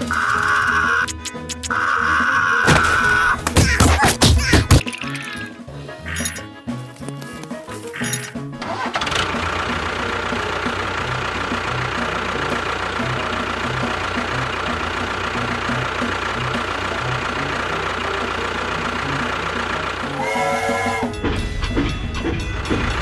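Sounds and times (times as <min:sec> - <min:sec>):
music: 0:00.0 - 0:23.0
engine idling with low knock: 0:08.9 - 0:23.0.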